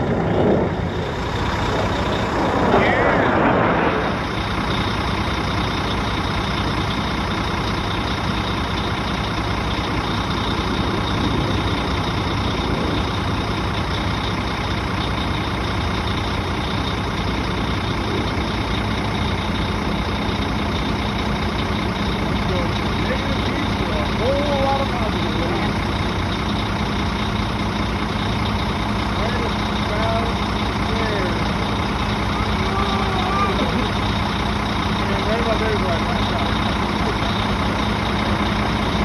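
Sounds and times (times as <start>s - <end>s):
jet passing: 0.0s - 5.7s
jet engine drone with whine: 0.0s - 39.0s.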